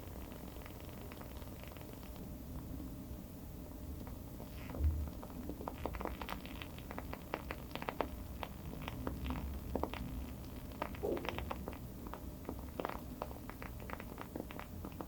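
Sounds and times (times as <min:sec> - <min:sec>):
candle wick crackling: 0:00.0 - 0:02.7, 0:04.0 - 0:15.0
low steady rumble: 0:00.0 - 0:15.0
soft low thump: 0:04.8 - 0:05.1.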